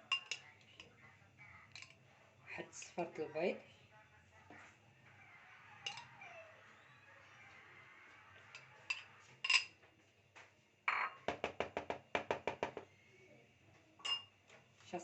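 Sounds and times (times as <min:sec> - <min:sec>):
utensil tapping mixing bowl: 0:10.9 - 0:12.9.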